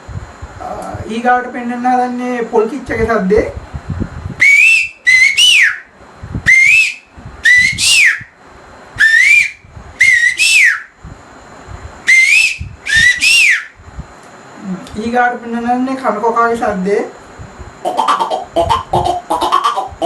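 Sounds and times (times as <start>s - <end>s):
man whistling birdsong: 4.4s - 5.9s, 6.5s - 8.4s, 9.0s - 11.0s, 12.1s - 13.8s.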